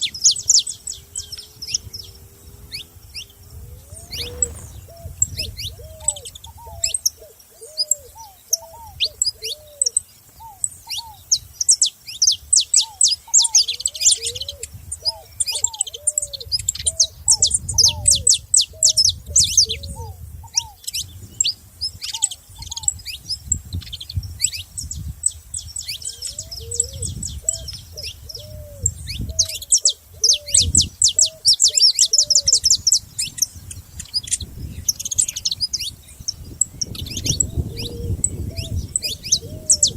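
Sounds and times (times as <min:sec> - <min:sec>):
finches chirping and singing: 0:00.0 - 0:07.1, 0:24.8 - 0:39.9
lower-pitched bird call: 0:00.0 - 0:11.2.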